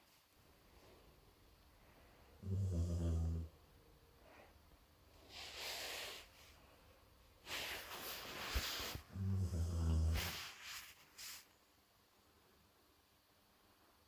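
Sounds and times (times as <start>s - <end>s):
dog snoring and breathing: 2.4s - 3.5s, 9.1s - 10.4s.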